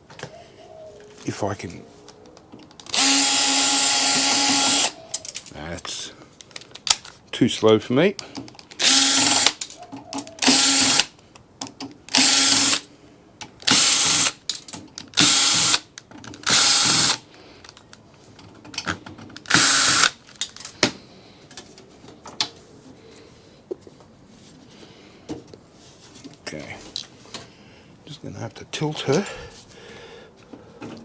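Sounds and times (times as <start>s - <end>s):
cordless power drill bursts: 2.9s - 5.0s, 8.8s - 9.6s, 10.4s - 11.1s, 12.1s - 12.9s, 13.7s - 14.4s, 15.2s - 17.3s, 19.5s - 20.2s.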